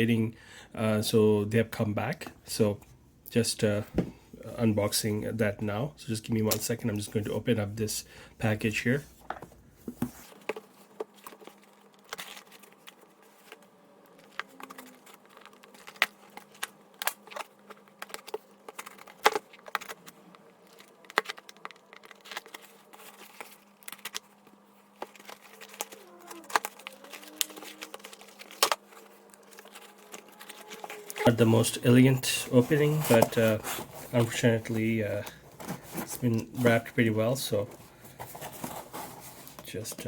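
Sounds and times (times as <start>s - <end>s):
faint steady hum: 0.0s - 40.0s
package tape and packaging crackling: 11.1s - 36.8s.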